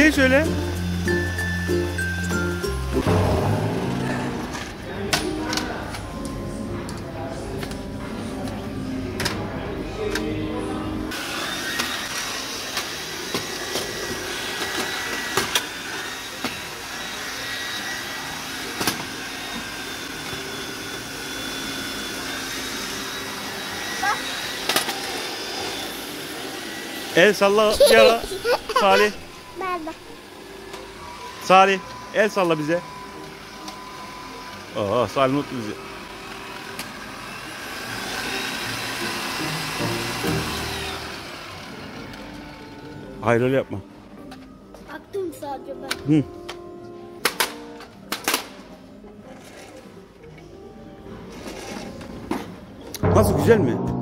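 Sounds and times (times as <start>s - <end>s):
background music: 0.0s - 11.2s, 38.6s - 54.0s
vacuum cleaner whining: 11.1s - 43.2s.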